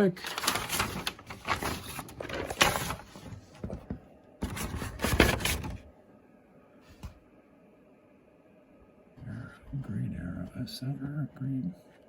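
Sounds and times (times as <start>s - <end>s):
paper rustling and crinkling: 0.0s - 5.8s.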